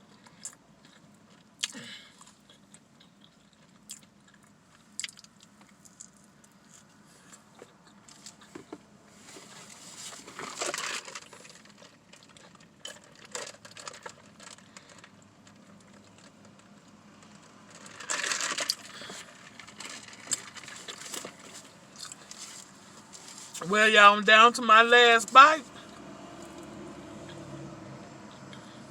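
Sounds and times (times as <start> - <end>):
chewing with wet clicks: 0.0 - 8.6, 22.0 - 22.7
paper wrapper crinkling: 9.4 - 16.5, 17.7 - 23.6.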